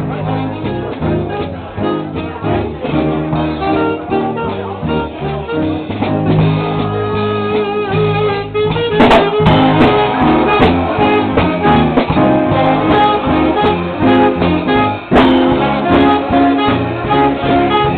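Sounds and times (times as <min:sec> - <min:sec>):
live band playing: 0:00.0 - 0:17.9
plucked guitar: 0:00.0 - 0:17.9
sharp hits: 0:09.0 - 0:15.8.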